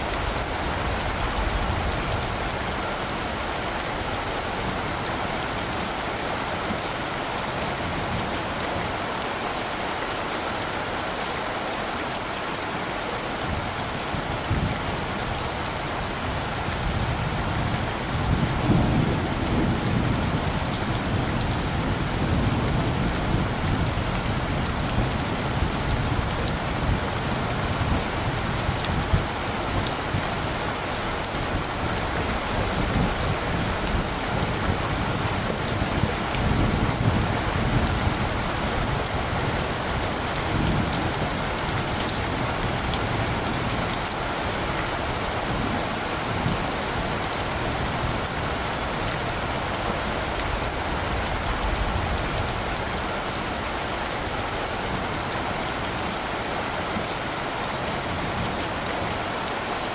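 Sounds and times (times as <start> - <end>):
rain pattering: 0.0 - 59.9
distant thunder rumbling: 16.3 - 30.4.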